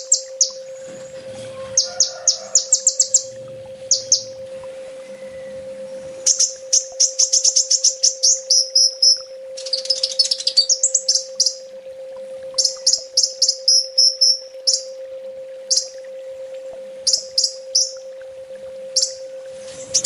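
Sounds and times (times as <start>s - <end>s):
bird chirping and trilling: 0.0s - 0.8s, 1.6s - 4.4s, 6.2s - 11.7s, 12.6s - 15.0s, 15.7s - 16.0s, 17.0s - 18.0s, 19.0s - 19.2s
steady low hum: 0.0s - 20.0s.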